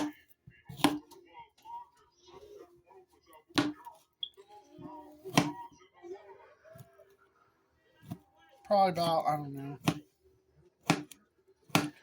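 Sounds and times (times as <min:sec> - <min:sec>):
knife chopping sausage: 0:00.0 - 0:01.2, 0:03.5 - 0:04.0, 0:05.2 - 0:05.7, 0:08.0 - 0:10.1, 0:10.8 - 0:12.0.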